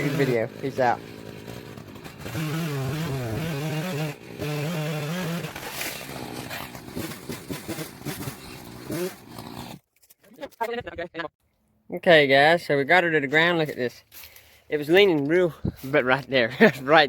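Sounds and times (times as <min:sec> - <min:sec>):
chainsaw cutting at high revs: 0:00.0 - 0:09.8.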